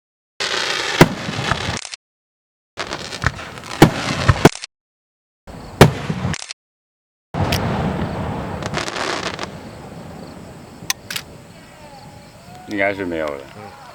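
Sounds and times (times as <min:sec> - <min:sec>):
fireworks bangs: 0:00.4 - 0:01.8, 0:02.8 - 0:04.5, 0:05.5 - 0:06.4, 0:07.4 - 0:13.9
fireworks crackling hiss: 0:00.4 - 0:01.8, 0:02.8 - 0:04.5, 0:07.4 - 0:13.9.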